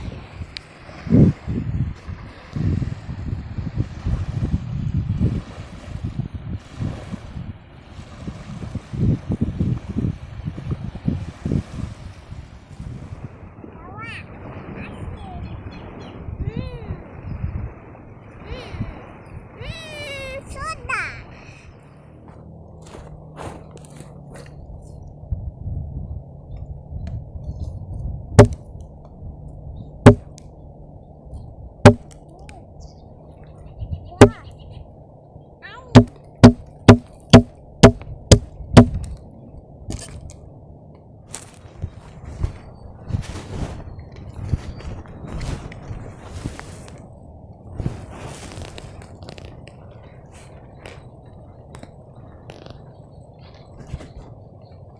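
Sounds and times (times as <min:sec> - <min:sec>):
wind buffeting microphone: 0:00.0 - 0:54.9
low steady rumble: 0:16.3 - 0:54.9
hand tool strikes: 0:36.0 - 0:39.0.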